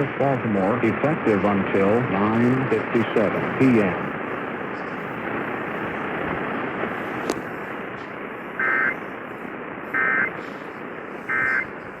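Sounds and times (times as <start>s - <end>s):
radio static hiss: 0.0s - 12.0s
warbling data tones: 8.6s - 9.0s, 9.9s - 10.4s, 11.3s - 11.7s.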